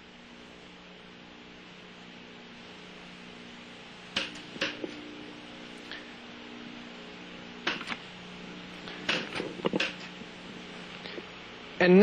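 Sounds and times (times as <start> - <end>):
electrical hum: 0.0 - 12.0
hands clicking and knocking: 9.1 - 10.1.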